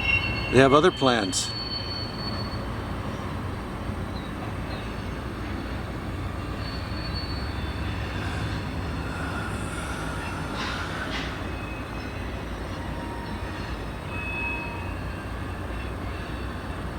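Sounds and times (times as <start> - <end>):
high-pitched wheel squeals: 0.0 - 3.4, 5.5 - 15.4
diesel locomotive engine rumble: 0.0 - 16.9.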